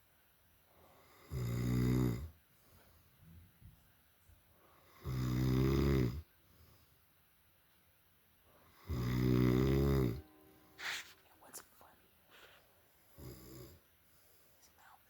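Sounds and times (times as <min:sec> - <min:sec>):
man snoring: 0:01.0 - 0:02.4, 0:04.8 - 0:06.3, 0:08.7 - 0:10.2, 0:13.2 - 0:13.8.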